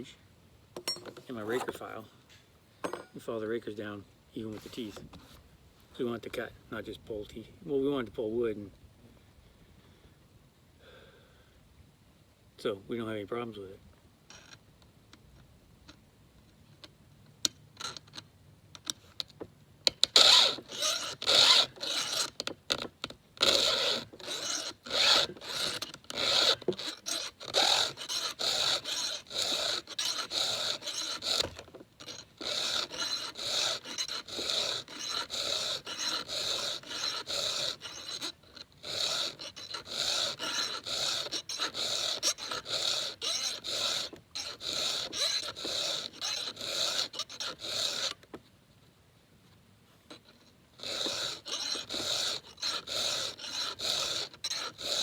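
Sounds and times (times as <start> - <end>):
file scraping chainsaw chain: 0.8 - 2.0, 2.8 - 3.3, 4.5 - 5.1, 17.8 - 18.2, 20.0 - 48.3, 50.1 - 55.0.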